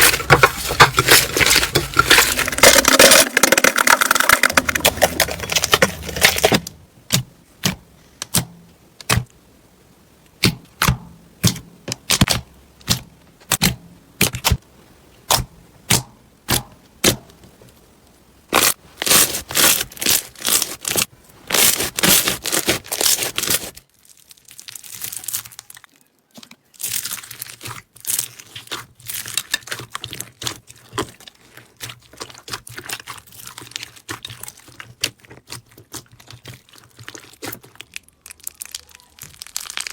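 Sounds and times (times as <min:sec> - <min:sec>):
slime popping and crackling: 0:00.0 - 0:07.8, 0:18.5 - 0:39.9.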